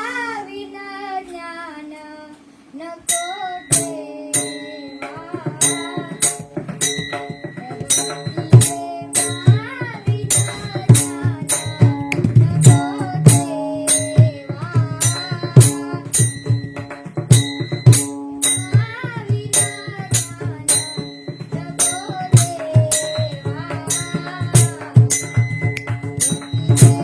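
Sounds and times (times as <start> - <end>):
hand cymbals: 3.0 - 27.0
drum beat: 3.7 - 27.0.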